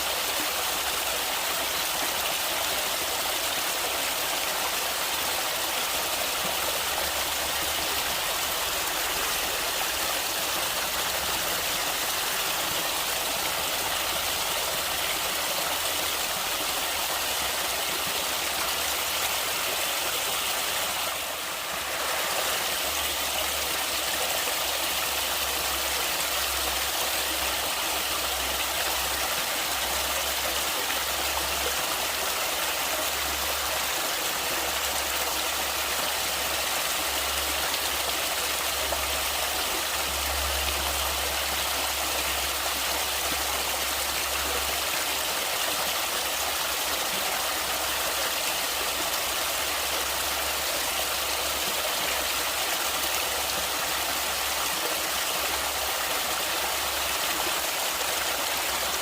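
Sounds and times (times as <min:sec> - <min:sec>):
stream water rushing and splashing: 0:00.0 - 0:59.0.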